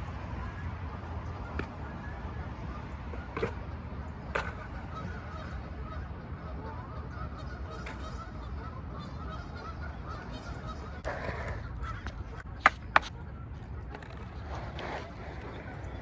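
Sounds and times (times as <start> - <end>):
skateboard clacks: 0.0 - 5.6, 7.8 - 8.7, 9.6 - 16.0
geese honking: 0.0 - 12.5
skateboard rolling on concrete: 0.0 - 16.0.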